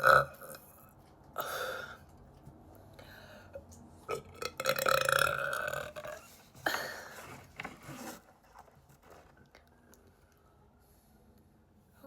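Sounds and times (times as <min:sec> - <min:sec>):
burp: 0:00.0 - 0:00.7, 0:04.1 - 0:06.3.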